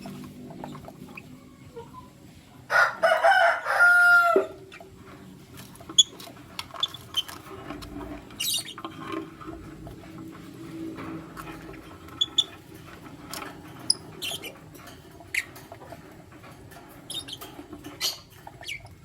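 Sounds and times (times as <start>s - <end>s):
rooster crowing: 2.7s - 4.6s.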